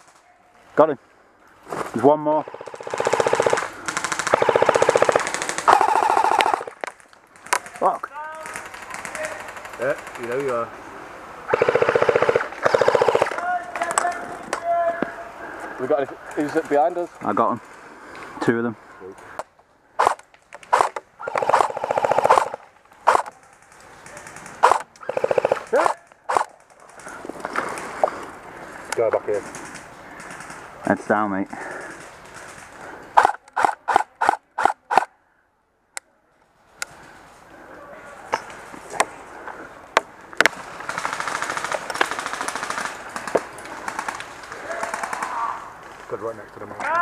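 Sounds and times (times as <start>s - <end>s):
airsoft guns firing: 2.5s - 10.6s, 11.5s - 14.2s, 20.0s - 27.2s, 31.6s - 35.1s, 40.4s - 45.5s
airsoft gun shots: 20.0s - 23.3s, 24.4s - 26.5s, 33.2s - 35.1s.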